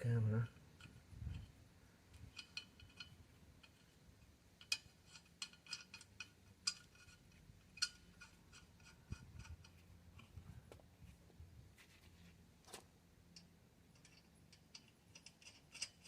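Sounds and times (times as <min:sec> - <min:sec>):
metal clicks of tools and lug nuts: 0:00.6 - 0:10.3, 0:13.3 - 0:16.0.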